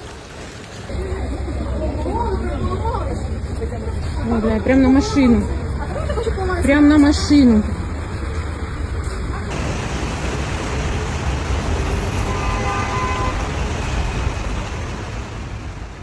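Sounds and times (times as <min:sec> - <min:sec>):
hail and heavy rain: 0:09.5 - 0:16.0.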